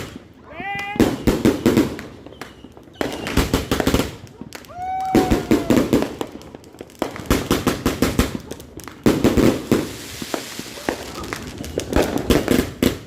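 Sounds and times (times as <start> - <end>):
fireworks bangs and crackling pops: 0.0 - 13.0
whistling firework shell: 1.1 - 3.8.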